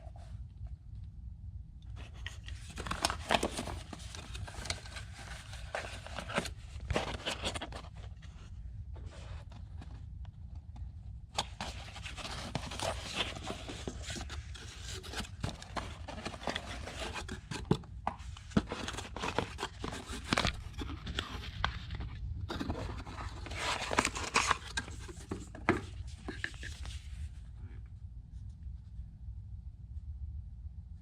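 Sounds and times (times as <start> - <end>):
rustling and scraping: 2.0 - 10.1, 11.4 - 27.6.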